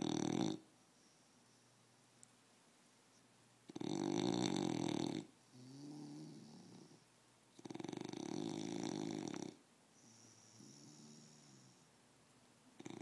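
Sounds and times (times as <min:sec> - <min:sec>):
dog snoring: 0:00.0 - 0:00.7, 0:03.7 - 0:07.0, 0:07.6 - 0:11.9, 0:12.8 - 0:13.0.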